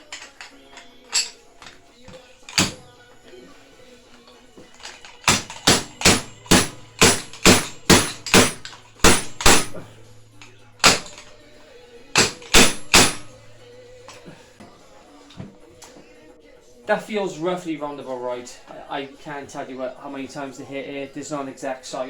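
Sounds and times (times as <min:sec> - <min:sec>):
sharp metallic hammer hits: 0:05.3 - 0:09.9, 0:10.8 - 0:11.3, 0:12.2 - 0:13.4.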